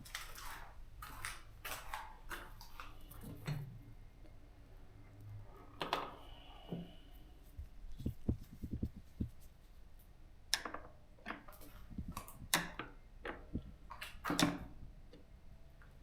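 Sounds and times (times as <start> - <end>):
clicks taps and rustles of hand work: 0.0 - 3.7, 7.6 - 9.6, 10.5 - 15.3.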